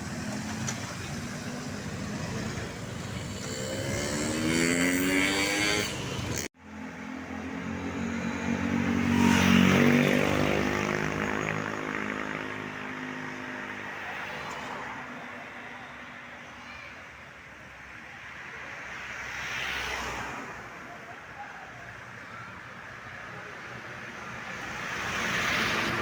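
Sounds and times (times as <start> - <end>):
vehicle engines passing: 0.0 - 16.4, 21.9 - 26.0.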